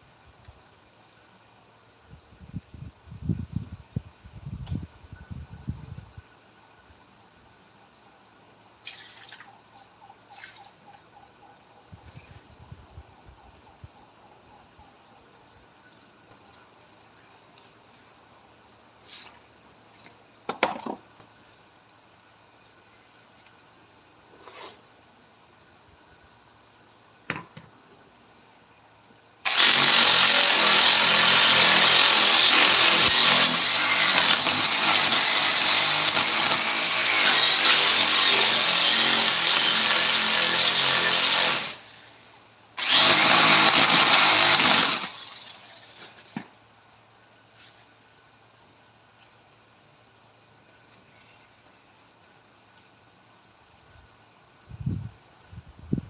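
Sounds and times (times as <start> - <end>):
power tool working wood: 29.5 - 41.9, 42.8 - 45.9.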